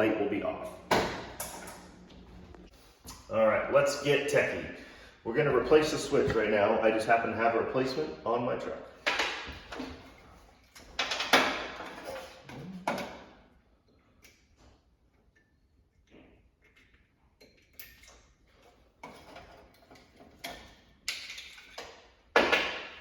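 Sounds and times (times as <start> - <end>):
handling knocks on electric range: 0.8 - 1.6.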